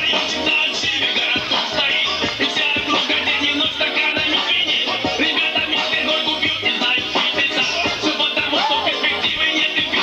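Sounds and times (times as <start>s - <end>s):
dance music over loudspeakers: 0.0s - 10.0s.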